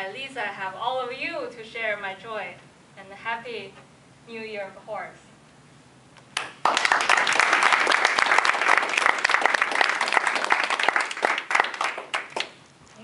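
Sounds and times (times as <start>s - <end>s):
hands clapping: 6.2s - 12.6s.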